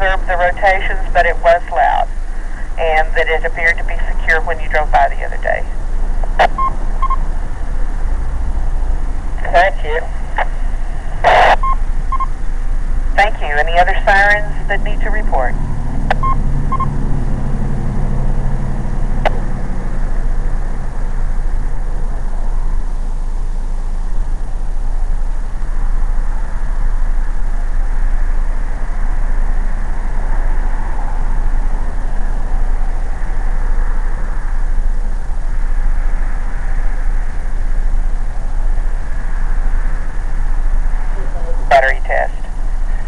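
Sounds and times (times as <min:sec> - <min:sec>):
vehicle rumble and hiss: 0:00.0 - 0:43.0.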